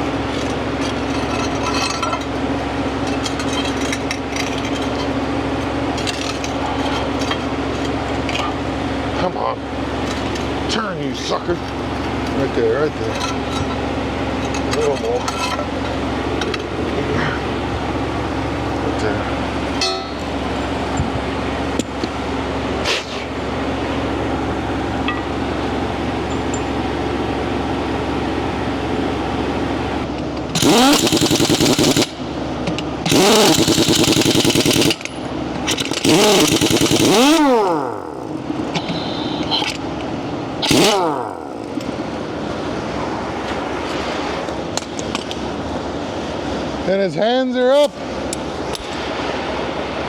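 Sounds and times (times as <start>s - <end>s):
steady mechanical hum: 0.0s - 50.0s
impact wrench hammering: 19.7s - 20.4s, 30.6s - 32.2s, 33.1s - 39.8s, 40.6s - 42.0s.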